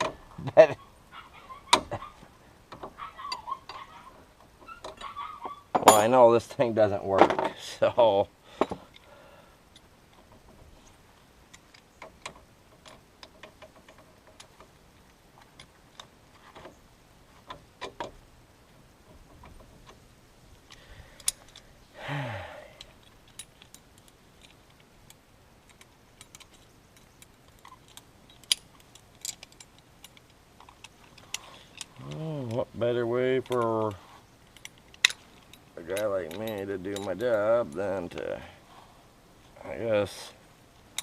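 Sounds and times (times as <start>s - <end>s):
hand tools clinking: 4.7s - 6.2s, 22.5s - 38.4s.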